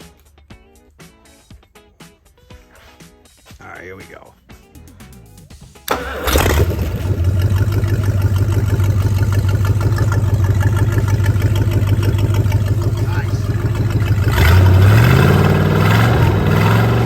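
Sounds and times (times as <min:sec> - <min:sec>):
boat engine idling fast: 0:05.9 - 0:17.0.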